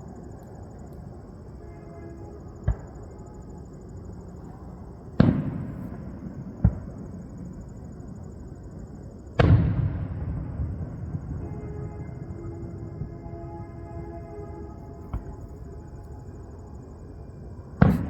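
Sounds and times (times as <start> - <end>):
fireworks booming: 5.1 - 7.9, 9.3 - 16.1, 17.8 - 18.0.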